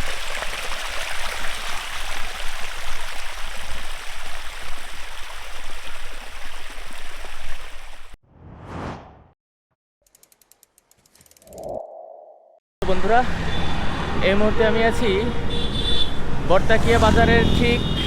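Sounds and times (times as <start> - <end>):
brief whoosh: 8.3 - 9.4.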